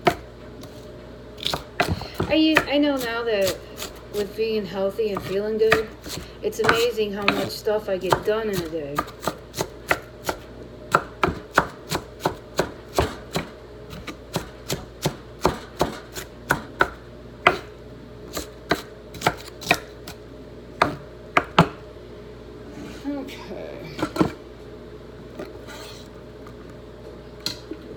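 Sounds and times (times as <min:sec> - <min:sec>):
knife chopping vegetables: 0:00.0 - 0:04.4, 0:05.1 - 0:17.7, 0:18.3 - 0:20.2, 0:20.8 - 0:21.8, 0:24.0 - 0:24.4.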